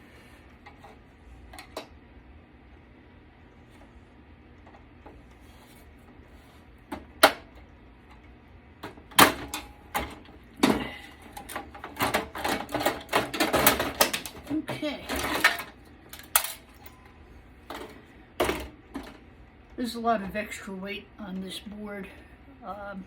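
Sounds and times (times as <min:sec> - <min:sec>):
parts clattering: 0:08.8 - 0:17.0
computer parts clicking and knocking: 0:11.4 - 0:16.7.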